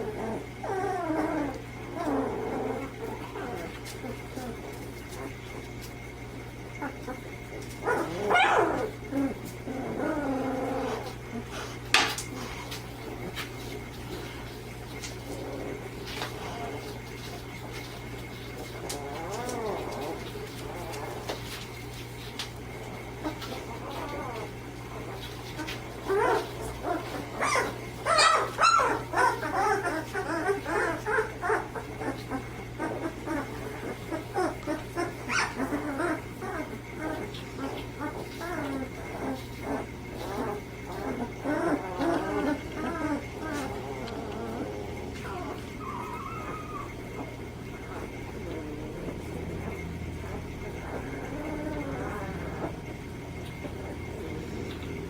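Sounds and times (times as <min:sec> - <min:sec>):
puppies yelping and crying: 0:00.0 - 0:55.0
puppy high yelps: 0:07.8 - 0:08.9, 0:27.4 - 0:31.8, 0:34.3 - 0:36.7, 0:45.8 - 0:47.0.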